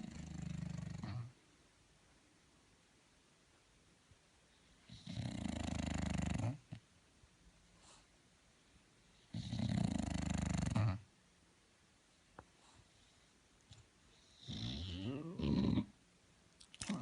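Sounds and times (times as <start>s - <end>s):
quiet breathing: 4.4s - 6.8s, 7.6s - 11.0s, 12.3s - 15.2s.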